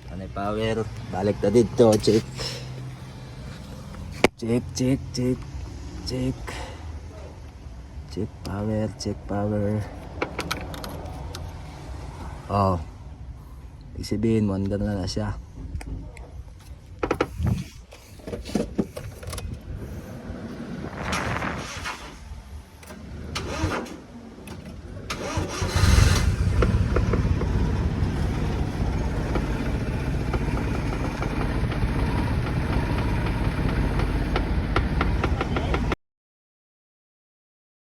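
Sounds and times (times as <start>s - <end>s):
clicks and handling noise: 10.0s - 11.6s
engine starting and idling: 21.0s - 36.0s.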